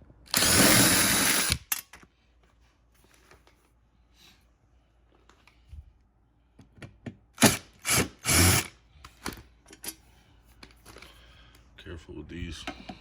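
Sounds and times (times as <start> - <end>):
power drill driving screws: 0.3 - 1.7, 7.4 - 8.7.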